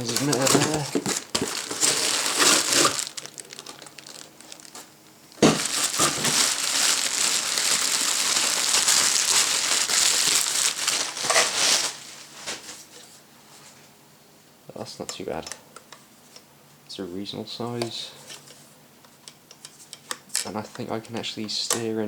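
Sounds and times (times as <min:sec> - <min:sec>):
plastic packaging crinkling: 0:00.0 - 0:12.8.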